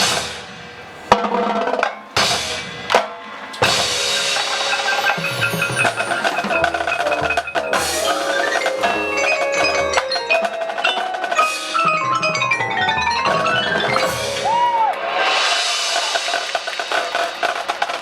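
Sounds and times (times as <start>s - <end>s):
loud cymbal crashes: 0.0s - 1.2s, 2.2s - 9.2s, 13.3s - 18.0s
drums: 0.0s - 18.0s
mallet runs on marimba: 3.6s - 16.9s.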